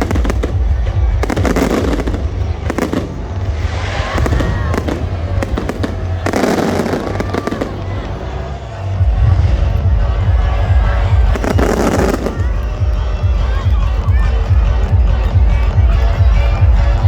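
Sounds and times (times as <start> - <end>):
fireworks booms: 0.0 - 8.2, 9.0 - 12.9
fireworks crackling: 0.0 - 16.1.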